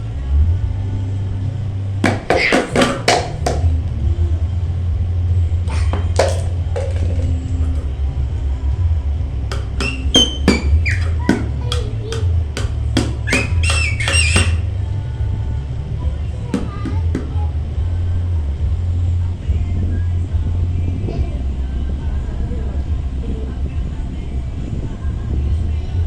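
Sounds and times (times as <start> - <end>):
high-pitched squeaks: 2.0 - 3.5, 9.5 - 14.7.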